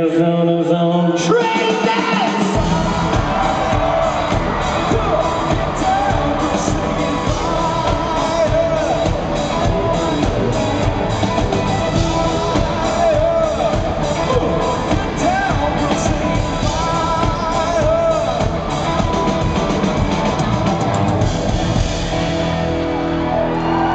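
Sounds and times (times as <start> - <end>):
rock song with vocals: 0.0 - 23.9.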